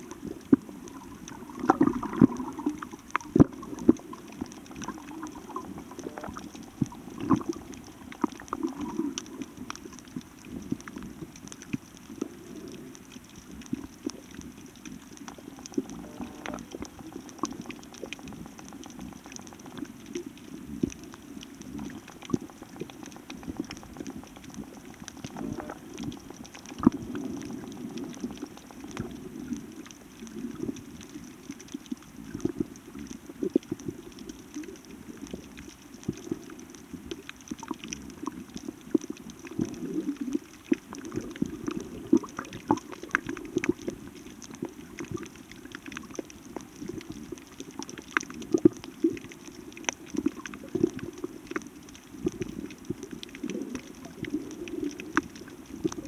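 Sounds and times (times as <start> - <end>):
seawater churning and sloshing: 0.0 - 10.6
sharp clicks and crackles: 0.0 - 56.0.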